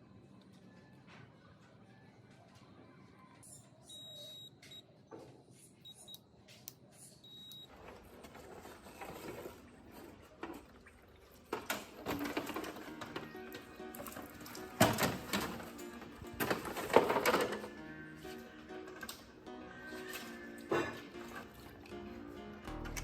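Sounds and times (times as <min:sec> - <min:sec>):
short high beeps: 0:03.5 - 0:04.8
small parts and tools clattering: 0:07.8 - 0:19.4.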